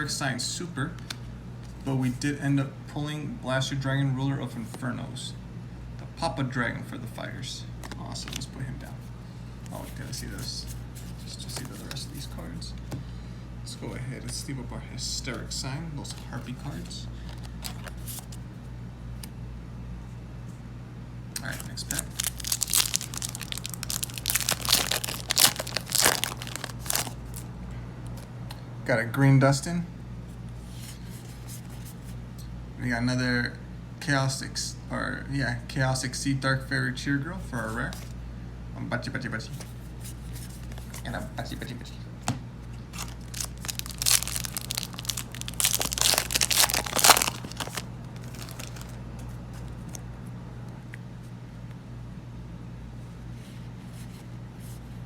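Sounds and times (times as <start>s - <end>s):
foil wrapper crinkling: 21.4s - 27.5s, 42.9s - 49.0s.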